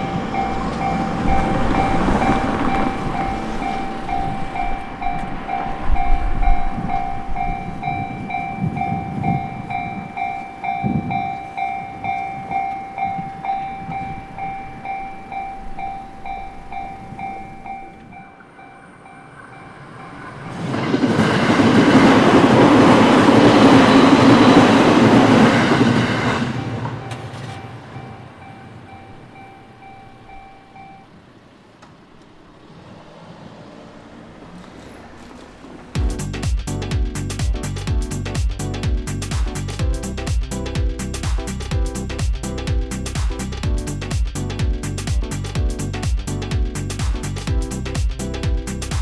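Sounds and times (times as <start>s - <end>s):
level crossing warning bell dinging: 0.0s - 31.4s
electric train passing: 0.0s - 49.0s
rumble of rail traffic: 0.0s - 49.0s.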